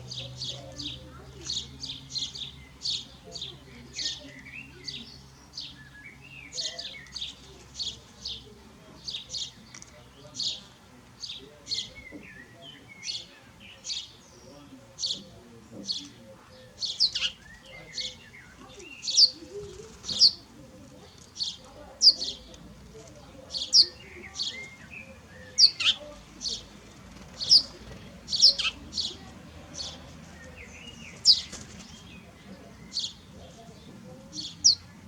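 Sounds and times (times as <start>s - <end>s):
birds chirping: 0.0s - 35.0s
soft bird twittering: 11.2s - 22.6s, 23.5s - 35.0s.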